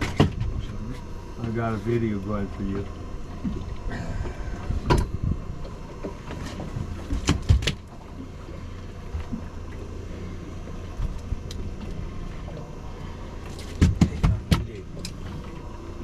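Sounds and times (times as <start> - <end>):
boat engine rumbling: 0.0 - 16.0
sharp knocks: 13.7 - 14.7.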